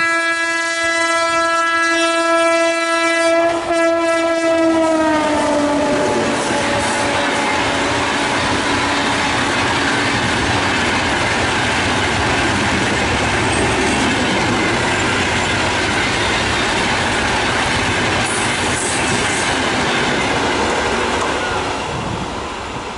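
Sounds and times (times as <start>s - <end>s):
train wheels clattering on rails: 5.4s - 22.9s.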